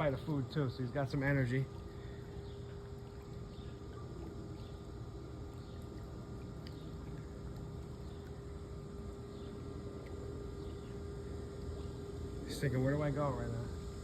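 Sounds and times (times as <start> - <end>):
constant low hum: 0.0 - 14.0.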